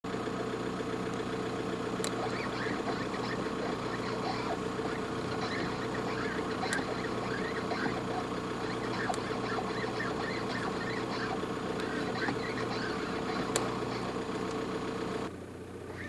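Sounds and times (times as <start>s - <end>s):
car engine idling: 0.1s - 16.0s
sharp clicks: 2.0s - 14.7s.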